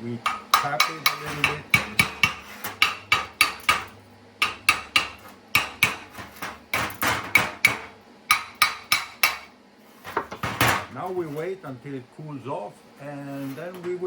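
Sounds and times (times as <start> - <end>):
hammer tapping on metal: 0.3 - 9.5.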